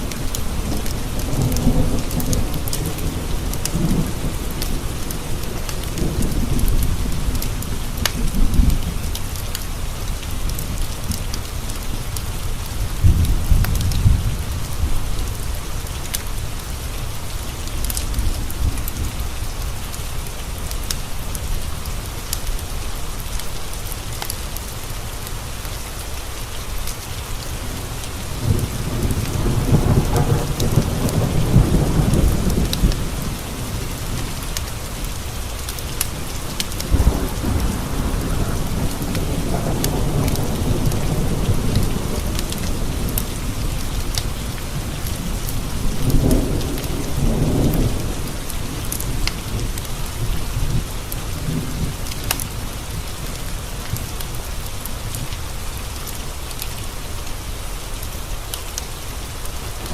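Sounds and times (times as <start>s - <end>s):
thunder rumbling: 0.0s - 9.5s, 12.4s - 20.7s, 27.2s - 55.2s
rain pattering on windows: 0.0s - 59.9s.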